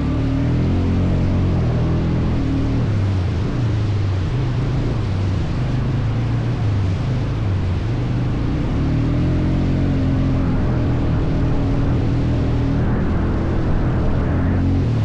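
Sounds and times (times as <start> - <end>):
atv engine running: 0.0 - 15.0
wind noise: 0.0 - 15.0.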